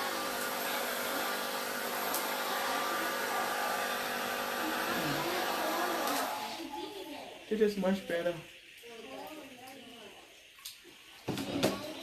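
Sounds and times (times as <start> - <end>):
hair dryer running: 0.0 - 6.6.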